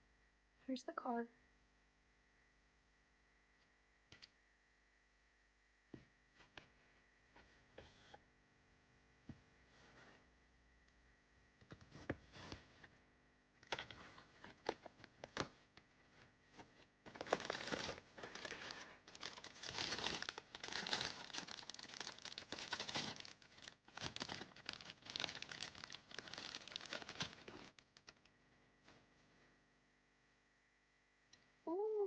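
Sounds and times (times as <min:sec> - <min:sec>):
packaging crinkling and tearing: 0:17.1 - 0:28.3.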